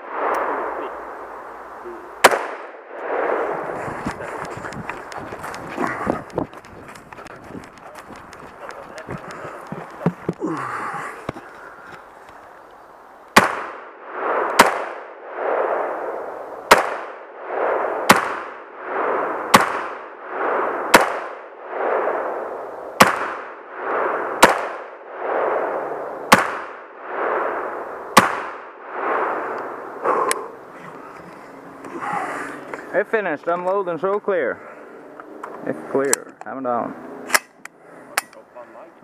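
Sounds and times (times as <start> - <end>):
rifle shots with echo: 2.2 - 3.6, 13.4 - 29.8.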